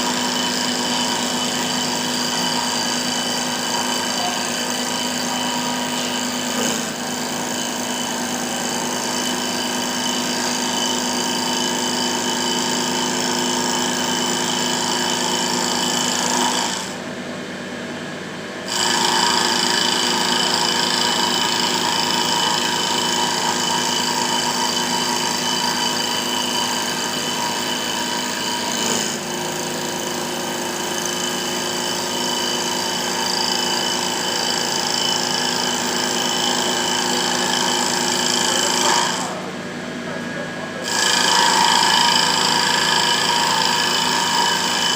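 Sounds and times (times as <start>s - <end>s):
lathe motors whining: 0.0s - 17.0s, 18.7s - 44.9s
cutter hissing on wood: 18.7s - 30.1s, 30.8s - 39.5s.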